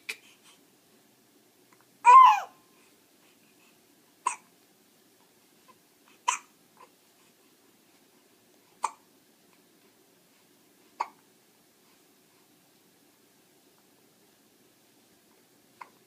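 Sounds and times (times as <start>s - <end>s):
baby hiccupping: 2.0s - 2.6s, 4.2s - 4.5s, 6.2s - 6.9s, 8.8s - 9.0s, 11.0s - 11.2s
baby squeaky vocal sound: 2.0s - 2.6s.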